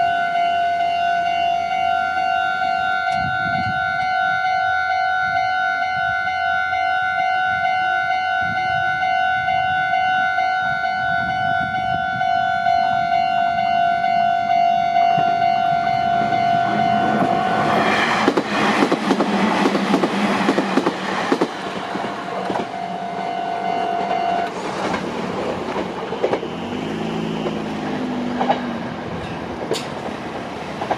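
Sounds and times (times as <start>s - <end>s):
level-crossing warning bell: 0.0s - 17.9s, 21.8s - 24.6s
train whine: 0.0s - 30.9s
train wheels clattering: 17.1s - 22.8s, 24.0s - 30.9s.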